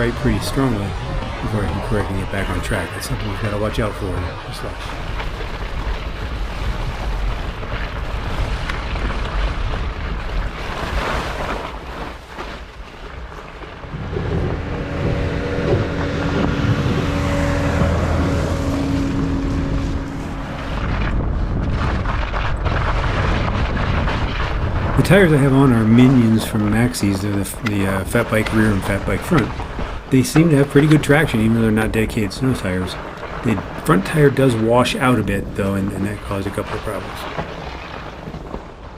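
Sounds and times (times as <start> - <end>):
bike tires rolling through snow: 0.0 - 38.9
steady hum: 13.8 - 22.9
wind buffeting microphone: 13.8 - 36.2.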